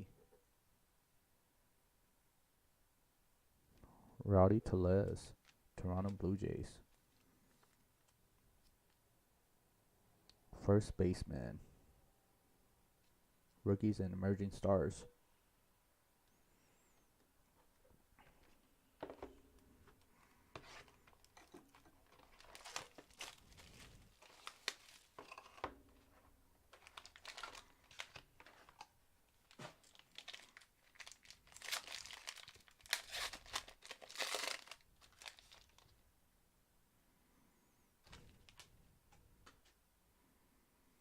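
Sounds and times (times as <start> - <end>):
wrapper crinkling and tearing: 21.0 - 25.7, 26.7 - 36.0, 38.4 - 38.7.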